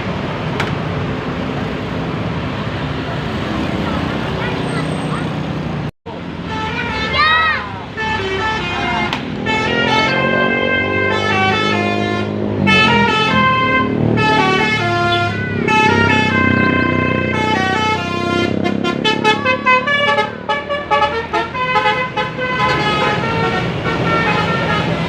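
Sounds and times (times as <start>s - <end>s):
multi-tone air horn playing tune: 8.0s - 25.0s.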